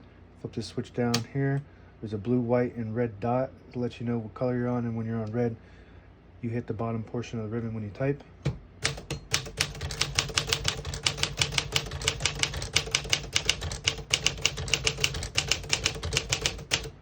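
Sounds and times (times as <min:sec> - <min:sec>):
manual typewriter typing: 0:08.8 - 0:17.0.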